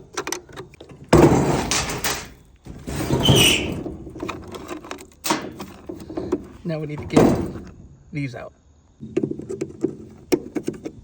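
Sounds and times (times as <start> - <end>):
high squeak: 3.0 - 3.8.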